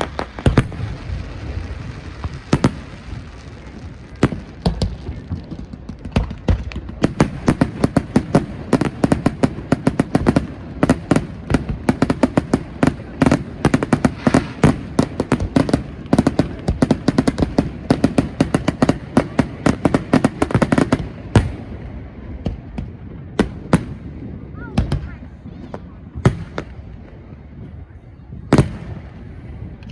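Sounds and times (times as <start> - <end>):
fireworks bangs and bursts: 0.0 - 29.9.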